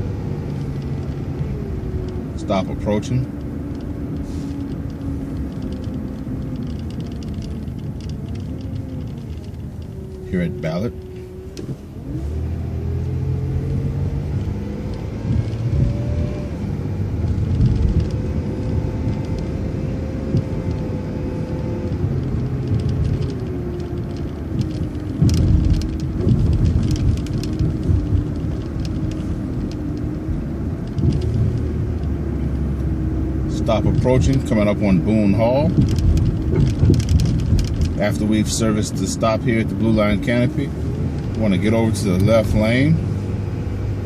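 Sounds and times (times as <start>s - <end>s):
bus engine and road rumble: 0.0s - 44.0s
knocks and rattles: 21.9s - 30.0s, 35.5s - 38.6s.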